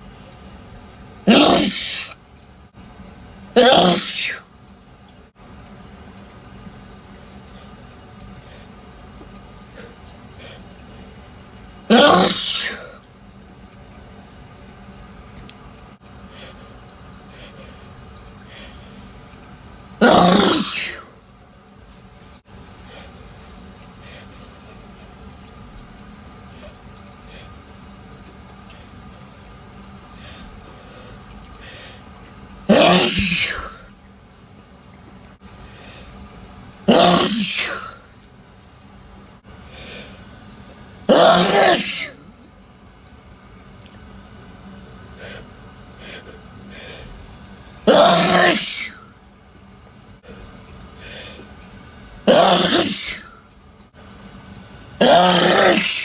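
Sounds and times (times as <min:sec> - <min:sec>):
shower running: 0:00.0 - 0:56.0
loud sneeze: 0:01.3 - 0:02.2, 0:03.6 - 0:04.5, 0:11.9 - 0:13.0, 0:20.0 - 0:21.1, 0:32.7 - 0:33.9, 0:36.8 - 0:38.0, 0:41.1 - 0:42.4, 0:47.8 - 0:49.1, 0:52.2 - 0:53.4, 0:55.0 - 0:56.0.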